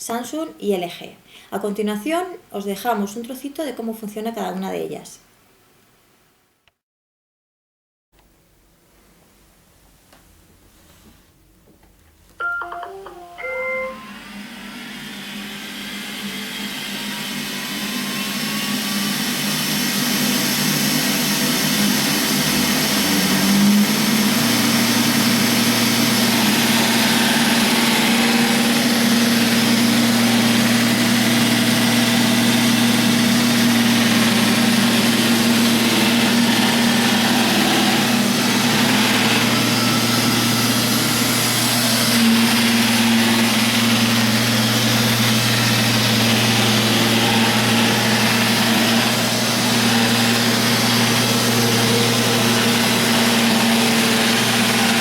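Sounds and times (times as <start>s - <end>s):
robot vacuum cleaner humming: 12.4s - 55.0s.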